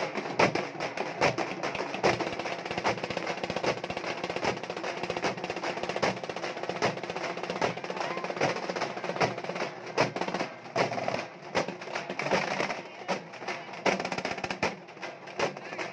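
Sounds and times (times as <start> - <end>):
frame drums beaten with sticks: 0.0 - 15.9.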